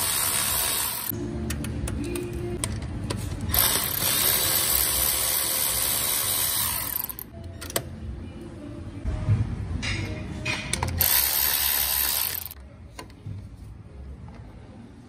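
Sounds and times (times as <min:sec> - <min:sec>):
power ratchet running: 0:00.0 - 0:01.1, 0:03.5 - 0:07.3, 0:11.0 - 0:12.6.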